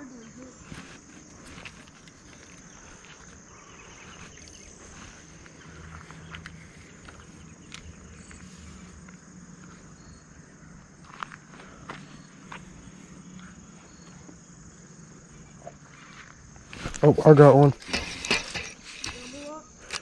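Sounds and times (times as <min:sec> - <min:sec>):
insects chirring: 0:00.0 - 0:20.0
faint clicks and rustles: 0:00.5 - 0:09.8, 0:15.6 - 0:20.0.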